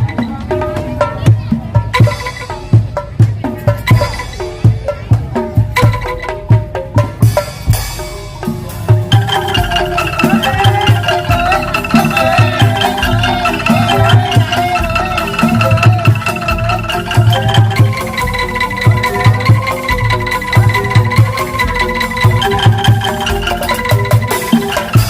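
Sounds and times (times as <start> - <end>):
shaken bamboo tones melody: 0.0 - 25.0
steady drum beat: 0.0 - 25.0.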